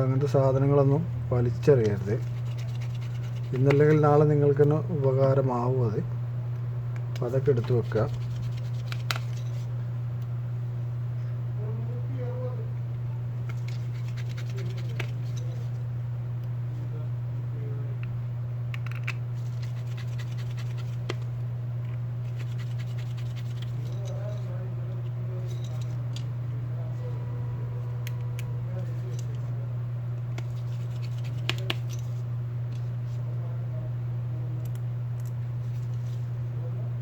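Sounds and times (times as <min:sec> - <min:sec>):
steady low hum: 0:00.0 - 0:37.0
clicks and scratches of handling tools: 0:01.8 - 0:04.8, 0:07.0 - 0:09.7, 0:13.4 - 0:15.7, 0:18.7 - 0:26.3, 0:28.0 - 0:29.5, 0:30.2 - 0:32.9.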